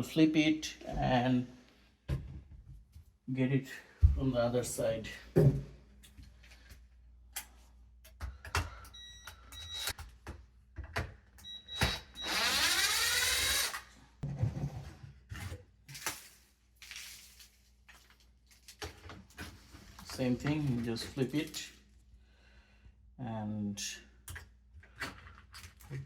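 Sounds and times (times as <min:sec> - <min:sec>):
power drill running: 0:11.8 - 0:13.9.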